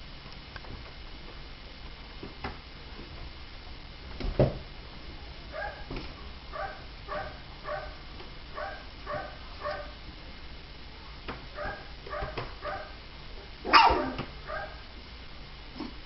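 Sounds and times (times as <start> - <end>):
puppy yelp: 13.7 - 14.8.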